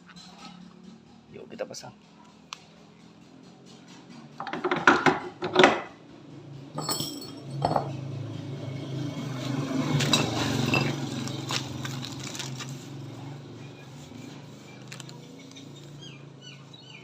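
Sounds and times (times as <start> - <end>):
metal parts clinking and knocking: 4.4 - 5.9, 6.8 - 8.0, 10.0 - 12.6.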